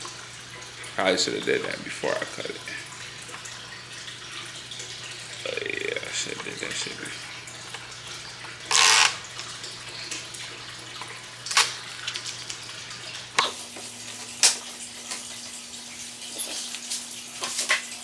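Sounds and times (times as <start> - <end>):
tape backing peeling rip: 8.7 - 9.6, 11.4 - 12.8, 14.2 - 15.2.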